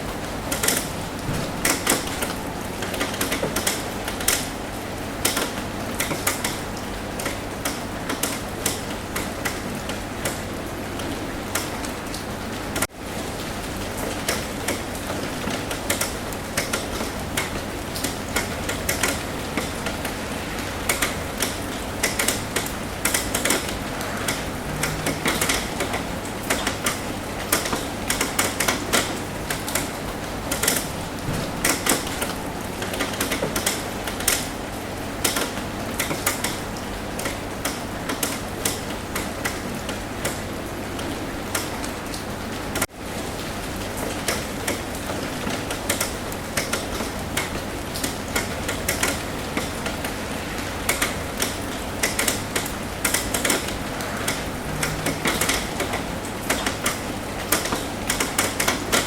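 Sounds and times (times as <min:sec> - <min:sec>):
rain tapping on a roof: 0:00.0 - 0:59.0.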